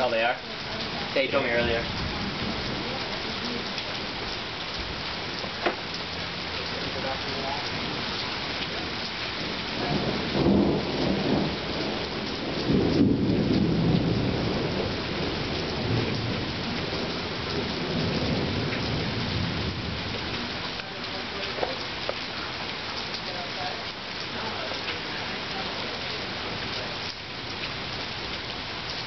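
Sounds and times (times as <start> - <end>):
thunder rumbling: 0.0 - 21.8
steady rain: 0.0 - 29.0.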